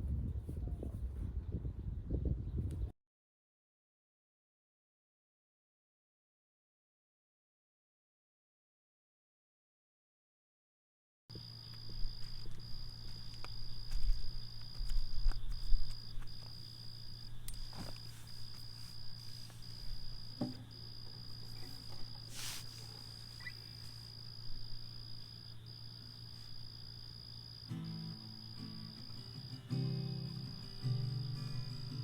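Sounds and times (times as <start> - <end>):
frogs and insects calling: 11.3 - 32.0
thumps on microphone: 20.3 - 20.8
faint knocks: 20.3 - 22.2.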